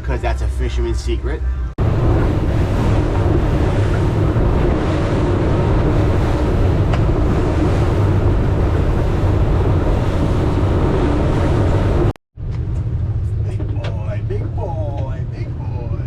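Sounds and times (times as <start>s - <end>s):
boat engine running: 0.0s - 12.2s
water rushing past hull: 1.8s - 12.2s
wind on microphone: 1.8s - 12.2s.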